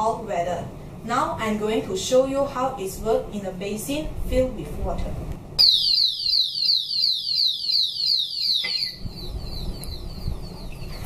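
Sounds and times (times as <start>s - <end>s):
alarm siren falling electronic sweeps: 5.6s - 10.2s.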